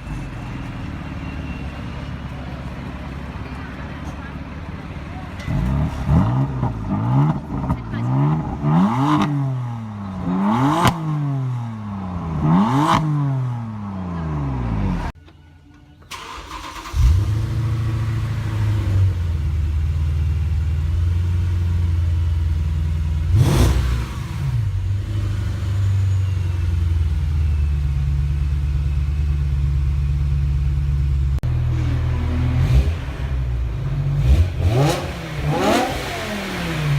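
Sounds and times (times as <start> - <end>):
car engine starting and idling: 0.0 - 36.9
car engine revving: 4.3 - 15.2, 16.1 - 27.2, 29.6 - 36.9.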